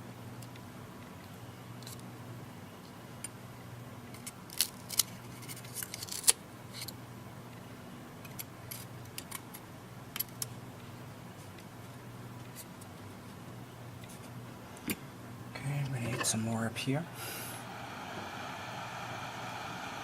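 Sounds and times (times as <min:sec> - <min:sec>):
steady low hum: 0:06.5 - 0:20.0.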